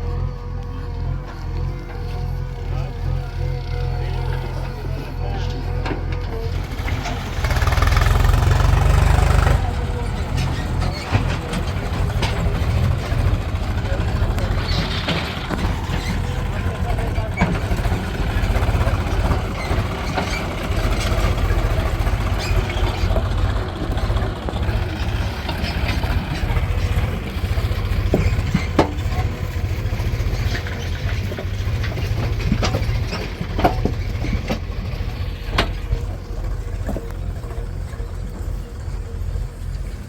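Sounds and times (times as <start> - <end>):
heavy diesel engine running: 0.0 - 40.0
sharp knocks and clanks: 5.4 - 38.0.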